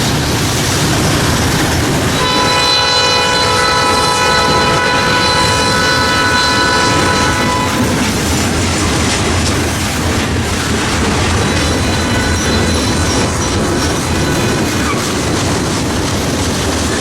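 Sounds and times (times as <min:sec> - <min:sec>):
train rumbling past: 0:00.0 - 0:17.0
wheels clattering over rail joints: 0:00.0 - 0:17.0
locomotive air horn: 0:02.1 - 0:08.2.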